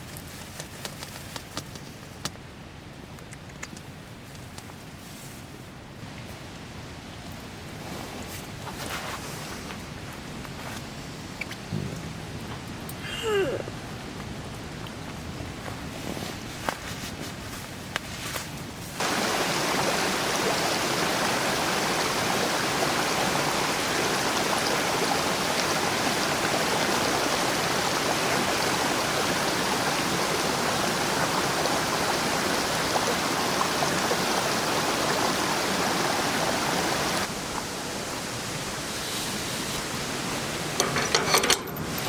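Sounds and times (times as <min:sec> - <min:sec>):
water flowing over rocks: 0:19.0 - 0:38.9.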